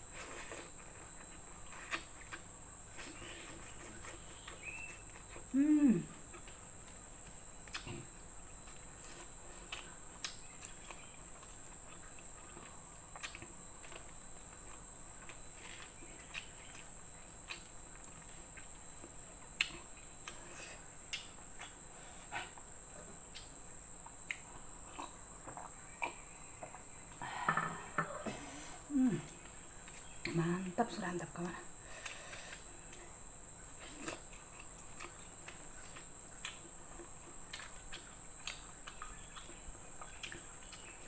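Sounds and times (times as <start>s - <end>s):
chewing clicks and smacks: 21.1s - 22.7s, 23.3s - 26.8s, 33.8s - 41.0s.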